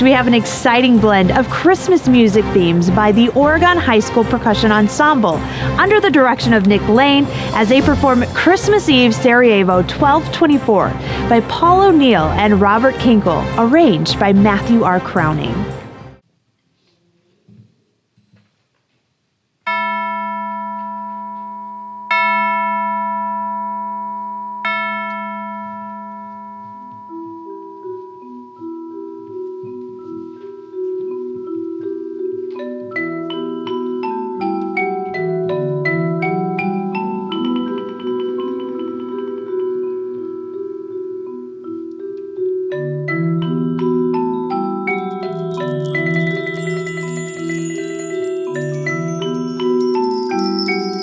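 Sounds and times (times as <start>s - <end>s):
marimba and vibraphone pattern: 26.8s - 51.0s
single struck mallet notes: 45.0s - 51.0s.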